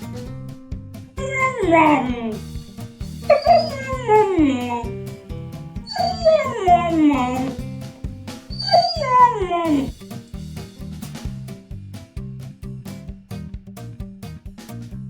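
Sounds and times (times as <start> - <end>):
background music with beat: 0.0 - 15.0
dog howling: 1.2 - 2.4, 3.3 - 5.0, 5.8 - 7.6, 8.5 - 9.9.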